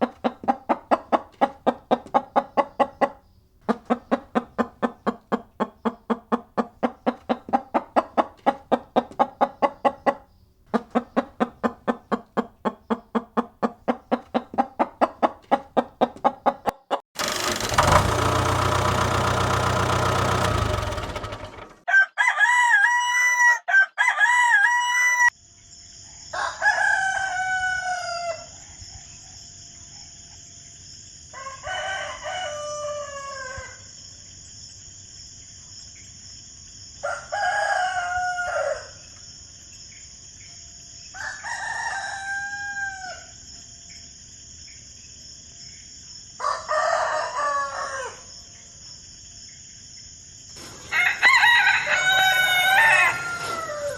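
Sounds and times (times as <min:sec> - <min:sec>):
chickens clucking: 0:00.0 - 0:21.8, 0:50.6 - 0:53.9
rooster crowing: 0:21.8 - 0:25.4, 0:26.3 - 0:28.6, 0:31.3 - 0:33.9, 0:37.0 - 0:39.0, 0:41.2 - 0:43.4, 0:46.4 - 0:48.3, 0:50.8 - 0:53.9.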